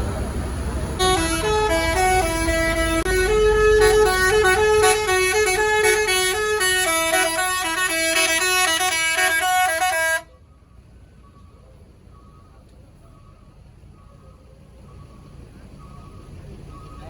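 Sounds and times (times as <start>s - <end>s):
musical air horn tune: 1.0s - 10.2s.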